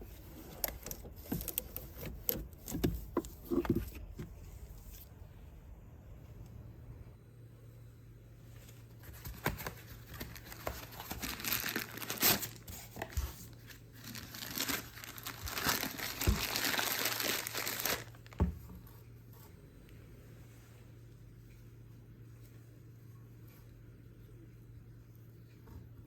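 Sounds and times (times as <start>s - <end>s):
crinkly material crumpling: 0.0s - 5.1s, 8.5s - 19.4s.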